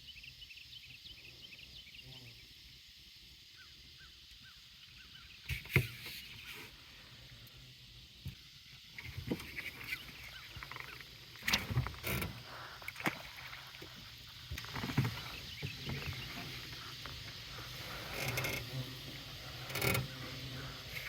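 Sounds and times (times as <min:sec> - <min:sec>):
fishing gear knocking and clattering: 0:09.0 - 0:21.0.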